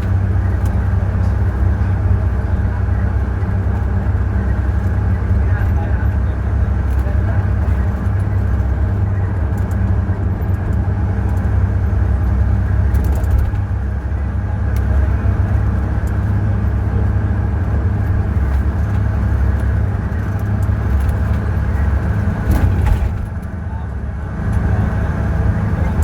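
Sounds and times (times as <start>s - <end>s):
diesel engine drone: 0.0s - 26.0s.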